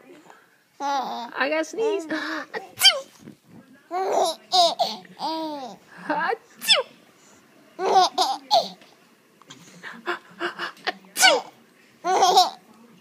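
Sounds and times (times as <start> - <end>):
baby giggling: 0.8 - 3.1, 3.9 - 5.8, 7.8 - 8.8, 11.2 - 12.6.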